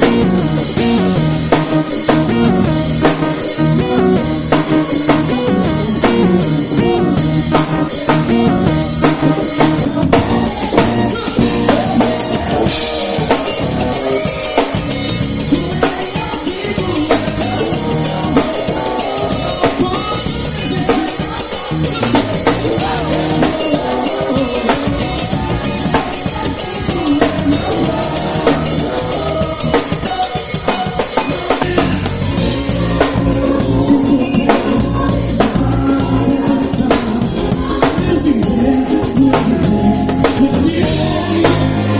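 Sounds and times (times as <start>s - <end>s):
band music: 0.0s - 41.9s
drum kit playing: 0.0s - 41.9s.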